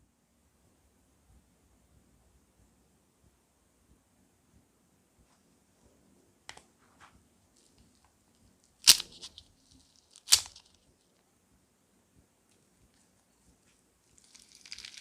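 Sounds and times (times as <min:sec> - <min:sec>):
slime crackling pops: 0:14.2 - 0:15.0.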